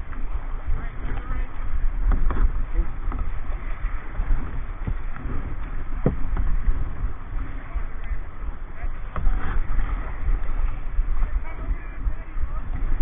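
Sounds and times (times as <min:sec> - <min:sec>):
water rushing and splashing: 0:00.0 - 0:13.0
wind buffeting microphone: 0:00.0 - 0:13.0.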